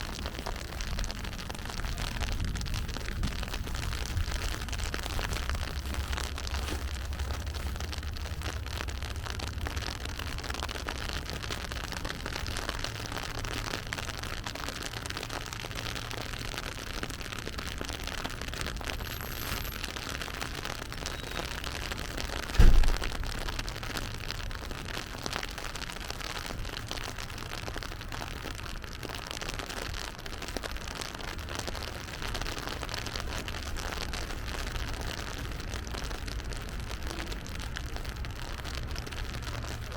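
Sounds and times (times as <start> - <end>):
low rumble: 0.0 - 10.6, 22.5 - 24.0
rain pattering: 0.0 - 39.9.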